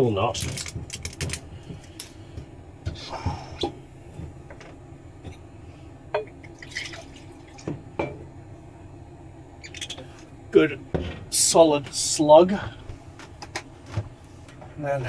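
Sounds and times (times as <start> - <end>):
liquid glugging into a glass: 6.2 - 7.8.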